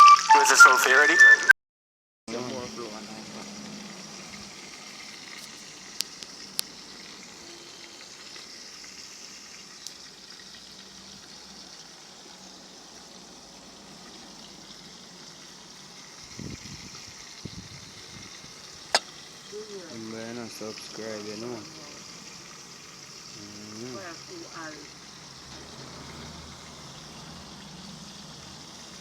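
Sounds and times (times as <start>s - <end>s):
dumplings sizzling in hot oil: 2.3s - 29.0s
oil popping: 3.4s - 7.4s, 16.2s - 19.9s.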